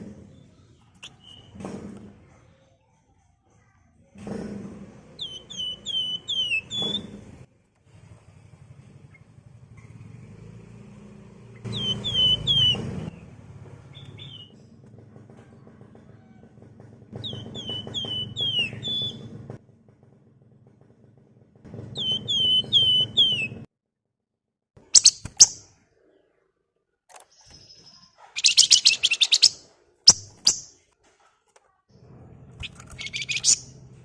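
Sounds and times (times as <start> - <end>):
songbird whistled notes: 5.2 - 7.0, 11.7 - 12.9, 17.2 - 19.2, 22.0 - 23.6, 27.5 - 30.7, 32.6 - 33.7
bird chattering trill: 11.7 - 12.8, 25.0 - 25.6, 27.4 - 30.7, 32.6 - 33.8
sharp high bird chips: 24.9 - 25.7, 27.3 - 30.8, 32.6 - 33.8.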